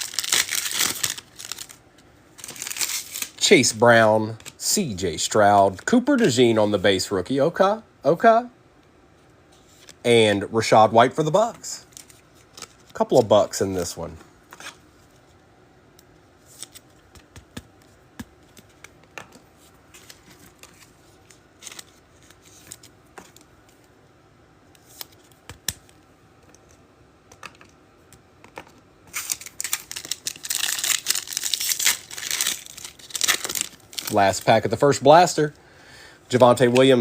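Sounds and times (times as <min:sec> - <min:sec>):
foil pack tearing with crinkling: 0:00.0 - 0:01.8, 0:02.4 - 0:03.4, 0:29.1 - 0:34.6.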